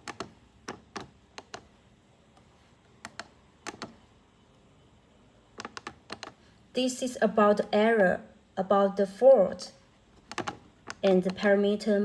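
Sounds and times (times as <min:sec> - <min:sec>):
keypad buttons clicking: 0:00.0 - 0:01.7, 0:02.4 - 0:04.0, 0:05.6 - 0:06.4, 0:10.2 - 0:11.5.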